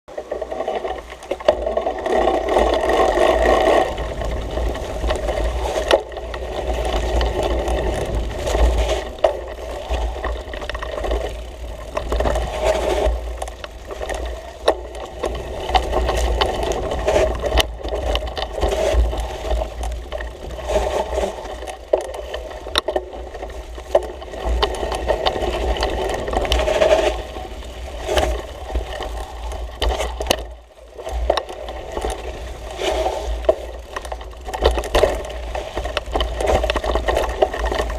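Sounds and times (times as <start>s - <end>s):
mountain bike rattling over dirt: 0.1s - 37.9s.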